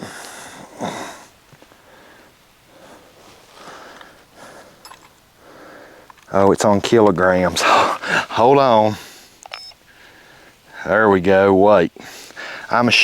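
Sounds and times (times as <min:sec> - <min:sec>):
man breathing: 0:00.0 - 0:06.3, 0:07.6 - 0:10.8, 0:12.0 - 0:12.7
man sniffing: 0:07.6 - 0:08.4
small clicks: 0:09.4 - 0:09.8.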